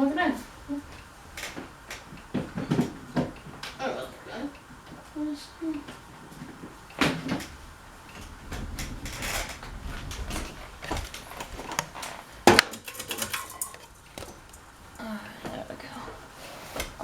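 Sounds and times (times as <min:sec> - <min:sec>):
things being handled: 0:05.7 - 0:15.0.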